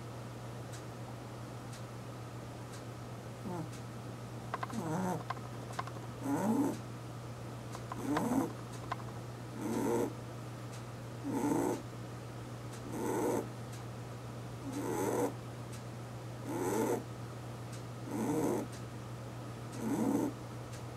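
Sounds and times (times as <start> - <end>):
steady low hum: 0.0 - 20.9
rabbit snoring: 3.4 - 3.8, 4.6 - 6.8, 7.8 - 10.2, 11.2 - 11.9, 12.8 - 13.5, 14.6 - 15.4, 16.4 - 17.1, 18.0 - 18.7, 19.8 - 20.4.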